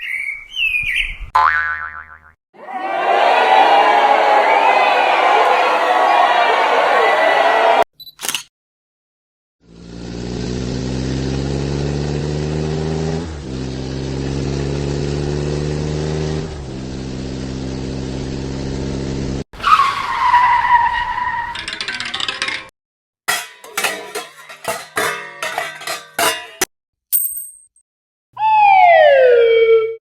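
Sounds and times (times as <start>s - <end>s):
car engine accelerating: 9.7s - 19.4s
tire squeal: 19.6s - 21.6s.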